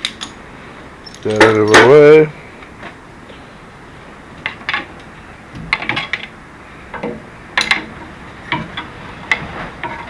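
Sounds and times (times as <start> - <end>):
metallic clinks and knocks: 1.0 - 2.0.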